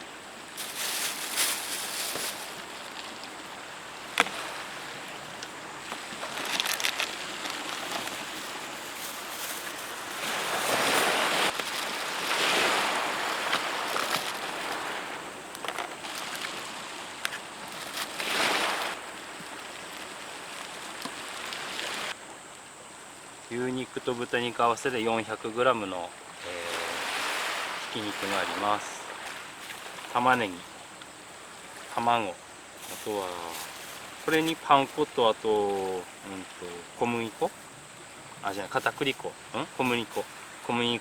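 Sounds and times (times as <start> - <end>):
waves washing onto beach: 0.0 - 22.2, 26.4 - 30.8, 31.4 - 41.0.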